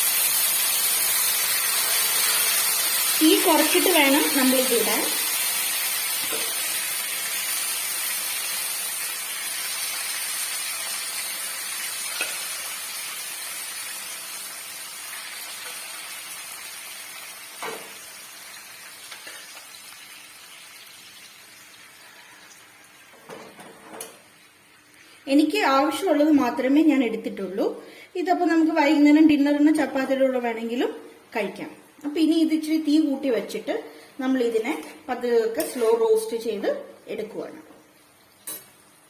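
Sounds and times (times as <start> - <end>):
curry sizzling in oil: 0.0 - 26.6, 37.8 - 39.0.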